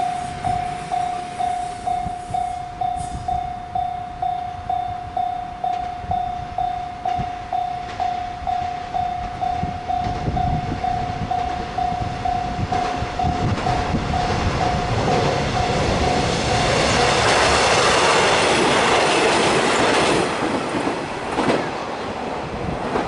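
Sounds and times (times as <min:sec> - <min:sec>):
level-crossing warning bell: 0:00.0 - 0:19.0
train rumble: 0:00.0 - 0:23.0.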